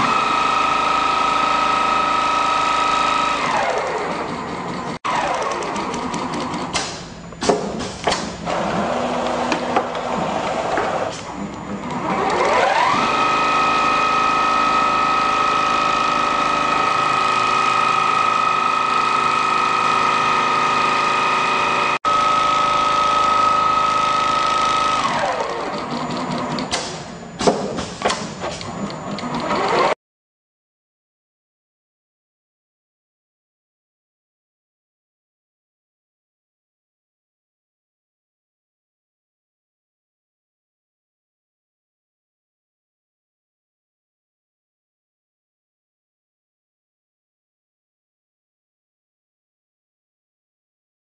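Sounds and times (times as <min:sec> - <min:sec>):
sewing machine stitching: 0:00.0 - 0:07.1, 0:07.8 - 0:30.0
machine clicking and knocking: 0:04.0 - 0:08.4.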